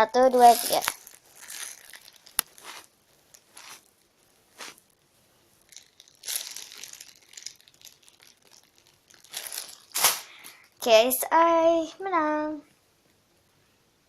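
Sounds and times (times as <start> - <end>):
squishy toys crinkling: 0.2 - 10.8.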